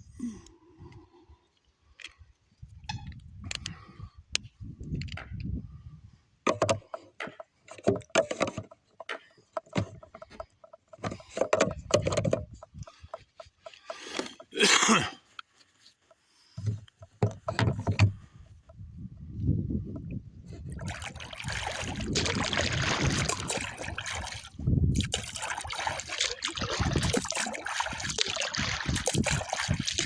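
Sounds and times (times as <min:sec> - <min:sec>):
water splashing: 0:20.7 - 0:30.0.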